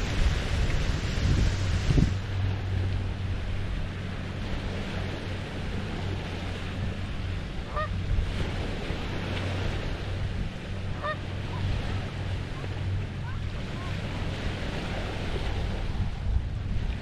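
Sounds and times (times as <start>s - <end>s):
small waves washing on shore: 0.0s - 17.0s
goose honk: 7.7s - 8.0s, 10.9s - 11.6s.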